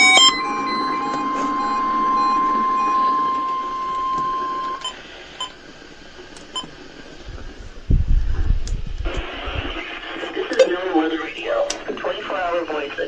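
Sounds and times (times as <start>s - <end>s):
high alarm tone: 0.0s - 5.6s
radio hiss: 0.7s - 7.6s, 9.0s - 13.0s.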